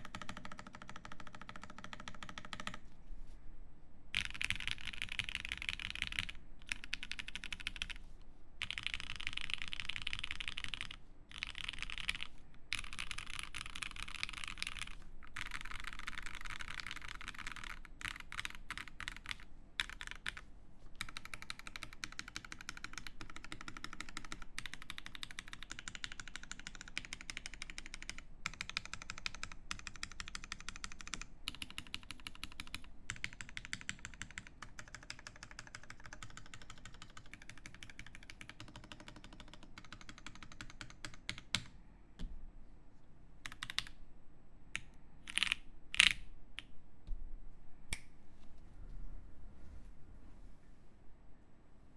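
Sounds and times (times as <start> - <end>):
fast typing on mechanical keyboard: 0.0 - 2.8, 4.2 - 8.0, 8.6 - 20.4, 21.0 - 41.7, 43.4 - 43.9.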